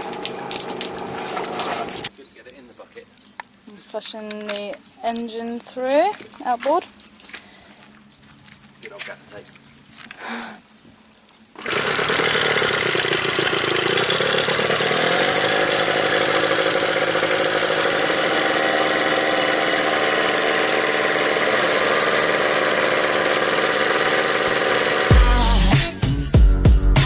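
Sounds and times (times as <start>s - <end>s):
outboard motor idling: 0.0s - 2.1s, 11.6s - 26.0s.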